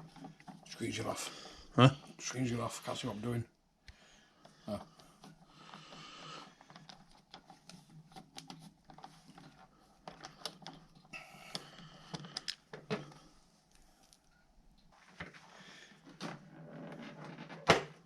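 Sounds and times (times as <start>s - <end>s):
small clicks and taps: 6.6s - 12.9s.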